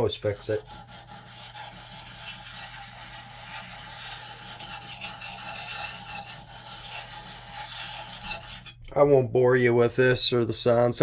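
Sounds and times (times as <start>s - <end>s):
sharpening stone scraping axe: 0.4s - 8.8s.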